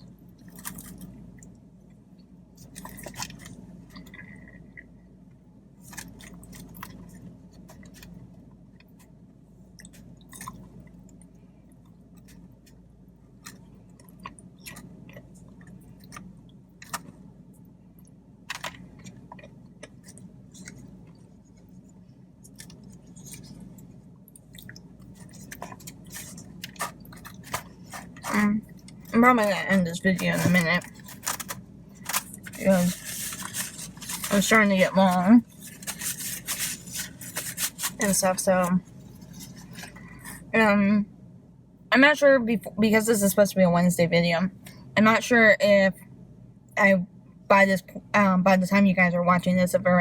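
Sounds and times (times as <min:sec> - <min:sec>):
steady low hum: 0:00.0 - 0:50.0
person chewing food: 0:09.7 - 0:12.8, 0:13.4 - 0:17.3, 0:18.0 - 0:29.1
mouth clicks and crunches: 0:09.8 - 0:11.2, 0:22.4 - 0:40.5.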